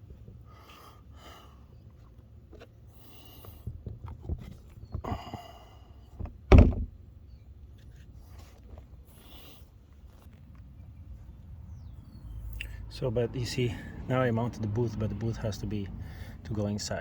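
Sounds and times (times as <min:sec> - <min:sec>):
loud heavy thunk: 0:06.2 - 0:06.9.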